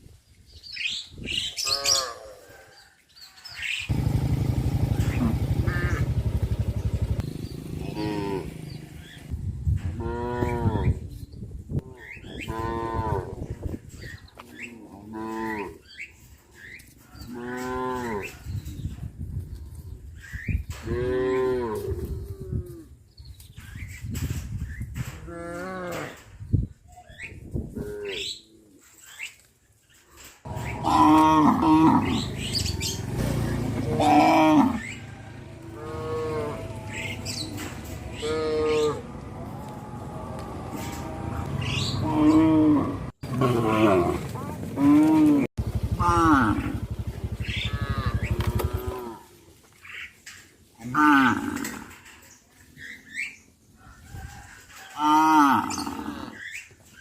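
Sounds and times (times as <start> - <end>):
low rumble of herd: 3.9 - 14.2, 17.1 - 26.7, 30.5 - 49.5
cattle mooing: 7.7 - 9.1, 10.0 - 11.0, 15.0 - 15.8, 17.3 - 18.4, 30.5 - 32.8, 33.7 - 49.3, 50.8 - 52.0, 55.0 - 56.4.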